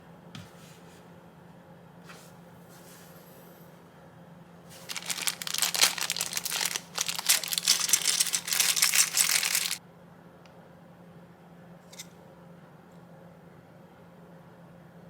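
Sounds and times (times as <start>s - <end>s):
packaging crinkling and crumpling: 4.7s - 9.8s.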